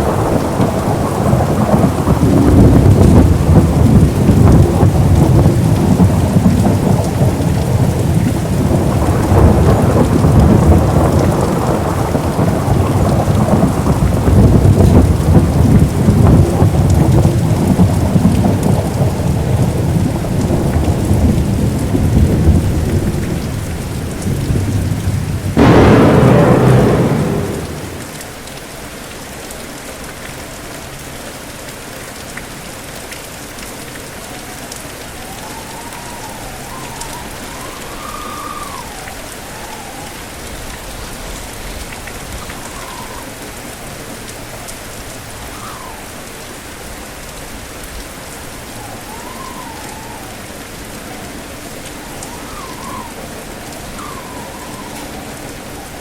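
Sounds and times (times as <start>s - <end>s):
low thunder rumbling: 0.0s - 28.4s
heavy rain: 0.0s - 56.0s
sharp thunderclap: 25.5s - 28.4s.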